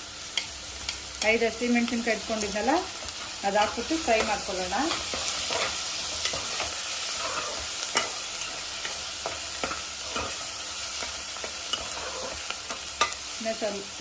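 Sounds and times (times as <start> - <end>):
onions sizzling in hot oil: 0.0 - 14.0
spoon stirring and knocking pan: 2.6 - 13.4.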